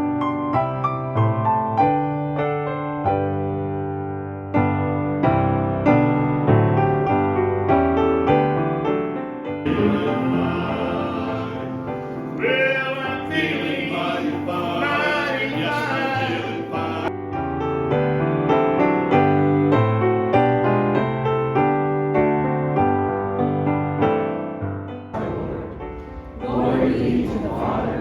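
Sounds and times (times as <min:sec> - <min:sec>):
piano chords: 0:00.0 - 0:28.0
person singing with vibrato: 0:09.7 - 0:17.1.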